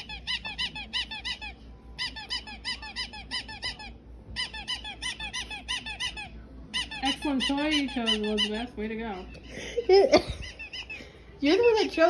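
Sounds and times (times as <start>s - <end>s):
dog toy squeaking: 0.0s - 8.8s, 10.1s - 11.0s.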